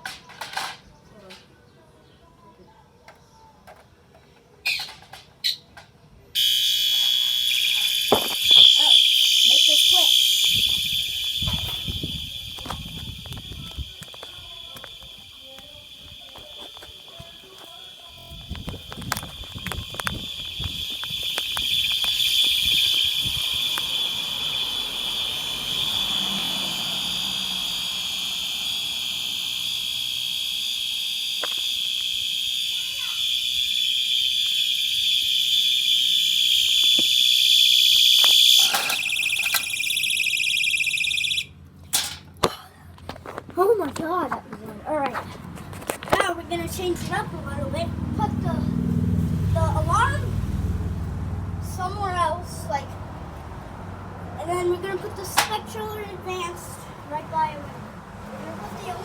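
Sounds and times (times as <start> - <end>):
fire alarm buzzing tone: 6.4 - 41.6.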